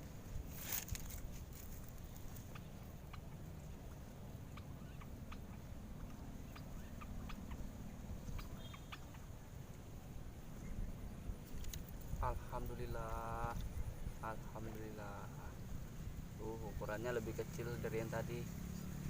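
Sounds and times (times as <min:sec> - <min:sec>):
low steady rumble: 0:00.0 - 0:19.0.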